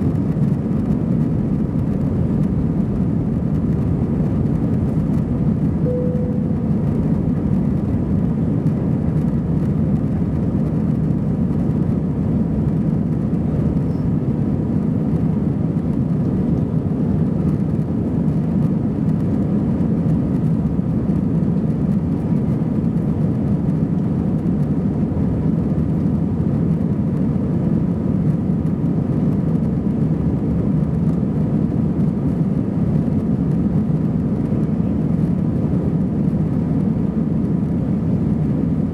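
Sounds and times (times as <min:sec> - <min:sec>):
airliner cabin roar: 0:00.0 - 0:38.9
faint steady tone: 0:05.8 - 0:07.2.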